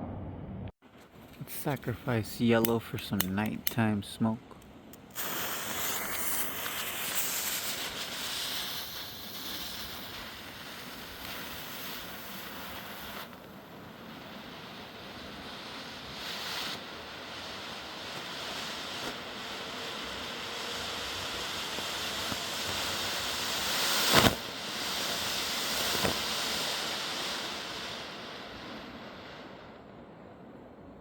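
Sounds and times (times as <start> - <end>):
sharp crack: 1.2 - 13.5
smoke firework hissing: 1.4 - 29.8.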